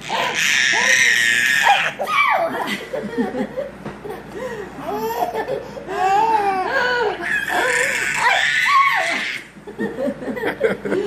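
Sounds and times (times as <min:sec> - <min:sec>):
baby high-pitched squeal: 0:00.0 - 0:02.5, 0:07.2 - 0:09.4
baby laughing: 0:04.8 - 0:09.5.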